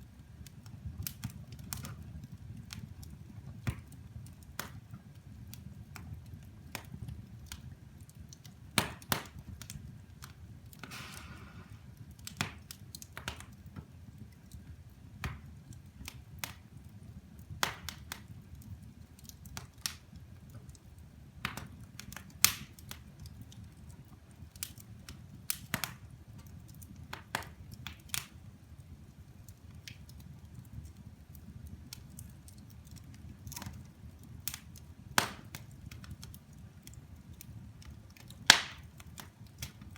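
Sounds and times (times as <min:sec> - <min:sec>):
low fire rumble: 0:00.0 - 0:39.9
wood fire crackling and popping: 0:00.0 - 0:39.9
fire hiss: 0:10.8 - 0:12.2.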